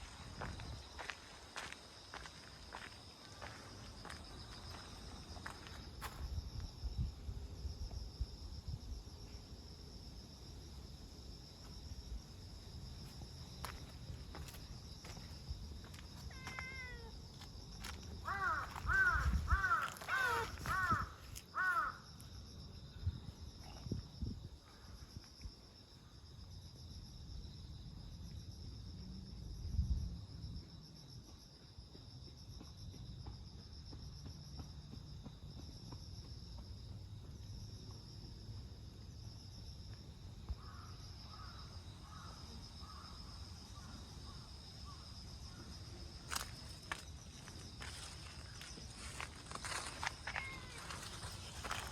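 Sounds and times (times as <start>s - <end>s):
insects chirring: 0.0s - 51.9s
crows cawing: 18.2s - 22.1s.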